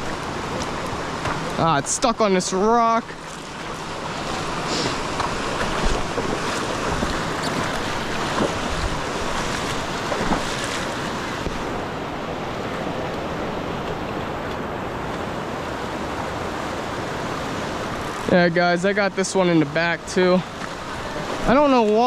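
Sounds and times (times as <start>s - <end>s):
river water rushing: 0.0s - 22.0s
wind on microphone: 4.1s - 11.9s.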